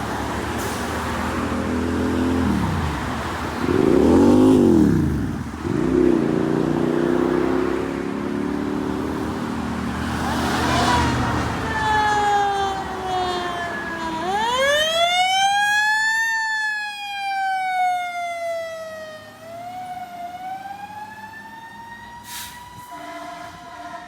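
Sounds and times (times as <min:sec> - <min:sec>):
truck diesel engine accelerating: 0:00.0 - 0:15.8.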